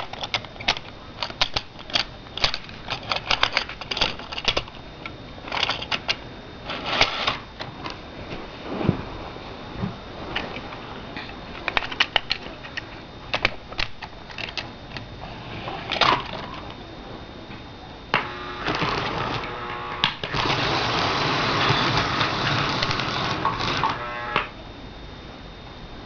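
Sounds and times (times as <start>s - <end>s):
plastic model train cars clicking: 0.0s - 4.8s
mechanical whirring rattle: 0.0s - 8.0s, 18.2s - 24.5s.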